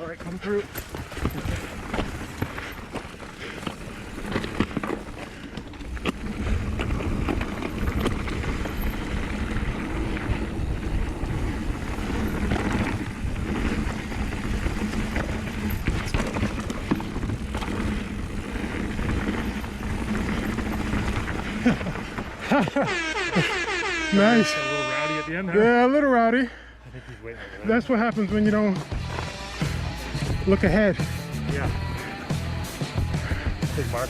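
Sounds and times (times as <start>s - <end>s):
bike rattling knocks: 0.0s - 22.8s
bike tyres clattering over rocks: 0.0s - 22.9s
wind buffeting microphone: 0.5s - 22.5s.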